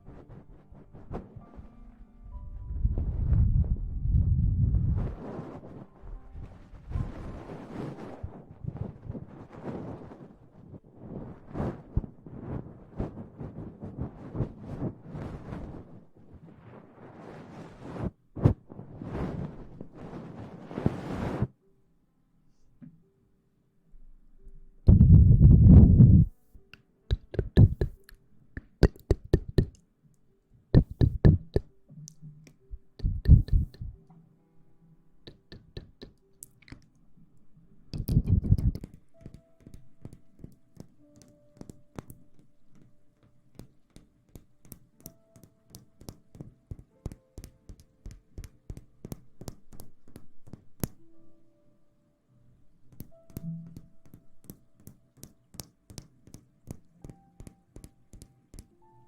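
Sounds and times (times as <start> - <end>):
rubbing and crackling on microphone: 0.0 - 21.6, 24.9 - 26.4, 27.1 - 29.8, 30.8 - 34.0, 35.3 - 36.8, 37.9 - 51.0
light taps and clicks: 26.2 - 29.8, 30.8 - 34.2, 35.3 - 37.0, 37.9 - 51.0.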